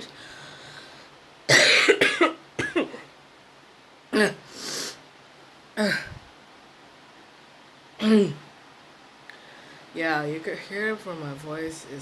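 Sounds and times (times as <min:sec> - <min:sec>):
person coughing: 0:01.5 - 0:03.1, 0:05.8 - 0:06.2.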